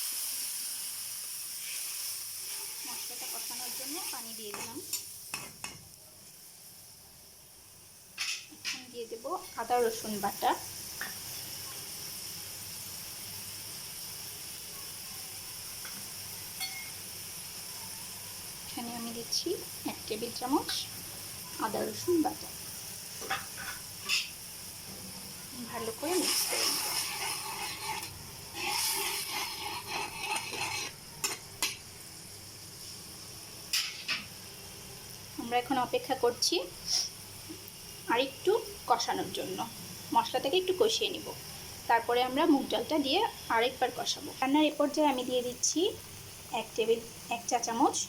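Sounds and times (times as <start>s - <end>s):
onions sizzling in a pan: 0.0s - 48.0s
spatula scraping a pan: 23.2s - 24.4s, 25.9s - 31.7s.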